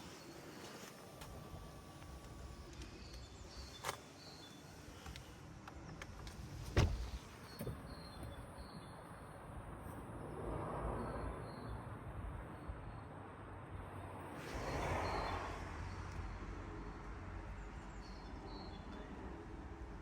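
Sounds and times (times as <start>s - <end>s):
faint outdoor background: 0.0s - 20.0s
heavy thump: 6.7s - 7.8s.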